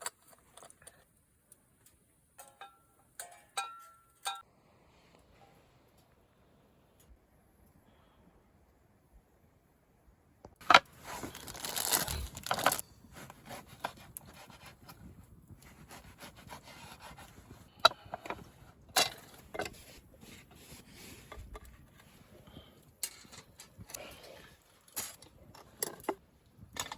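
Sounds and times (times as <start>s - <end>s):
rubbing and scraping: 10.6s - 26.9s.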